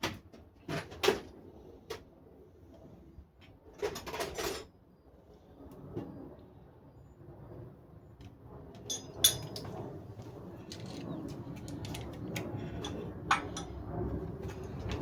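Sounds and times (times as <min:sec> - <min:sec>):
low steady hum: 0:08.6 - 0:15.0.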